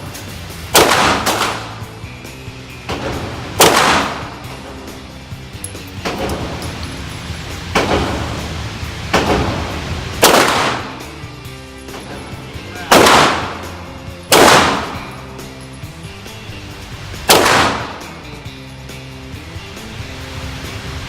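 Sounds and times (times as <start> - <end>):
pistol shots echoing: 0.7 - 1.9, 2.9 - 4.6, 9.2 - 11.1, 12.9 - 15.2, 17.3 - 18.2.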